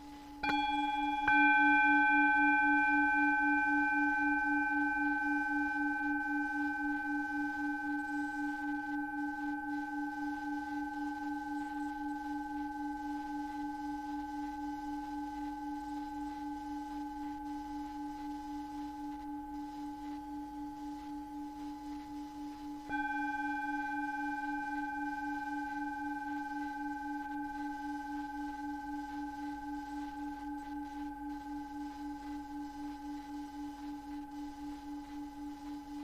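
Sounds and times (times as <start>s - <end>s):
meditation bell tone: 0.0s - 36.0s.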